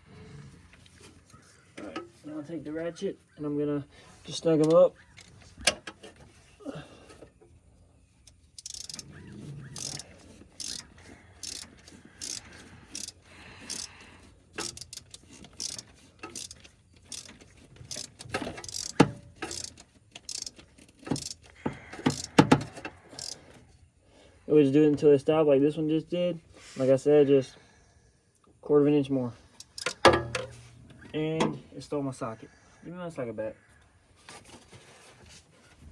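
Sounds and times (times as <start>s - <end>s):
hand ratchet clicking: 8.2s - 9.1s, 9.8s - 23.6s, 29.6s - 30.5s.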